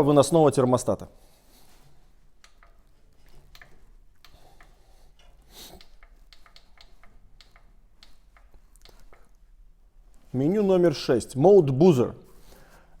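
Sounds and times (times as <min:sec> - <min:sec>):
faint clicks and ticks: 0:01.8 - 0:10.3.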